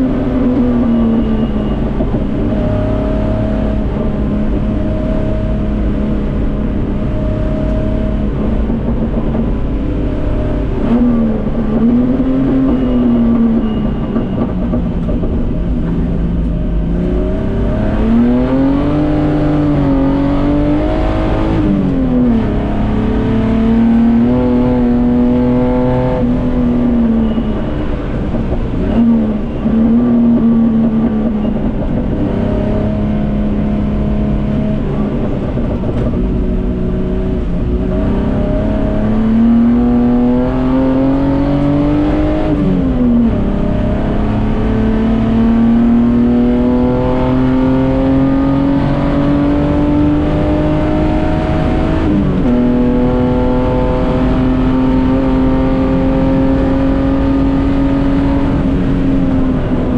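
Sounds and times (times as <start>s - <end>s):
race car engine revving: 15.2s - 59.9s.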